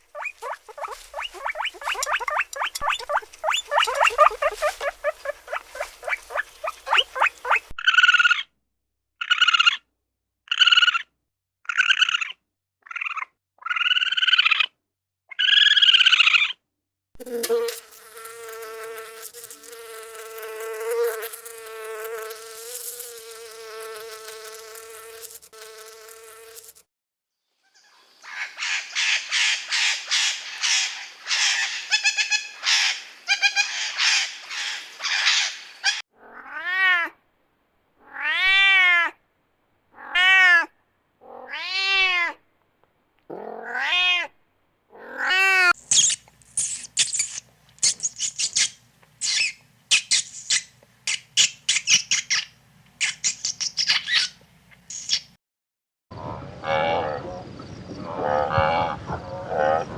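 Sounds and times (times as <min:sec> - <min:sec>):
cat meowing: 0:36.2 - 0:37.2, 0:38.0 - 0:39.2, 0:40.0 - 0:42.4, 0:43.3 - 0:44.3, 0:45.0 - 0:45.7.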